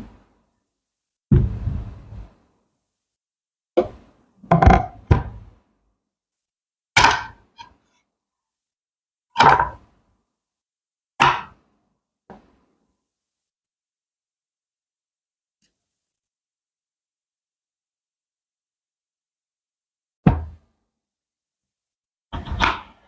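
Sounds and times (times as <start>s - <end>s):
thunks and knocks: 1.3s - 2.3s, 3.8s - 5.6s.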